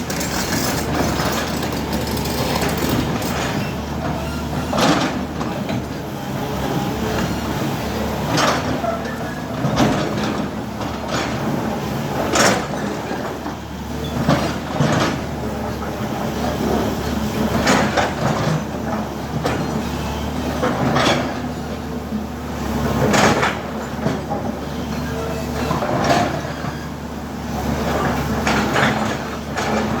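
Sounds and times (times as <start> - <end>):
metallic clanks and scrapes: 0.0 - 3.7
diesel engine running under load: 0.0 - 30.0.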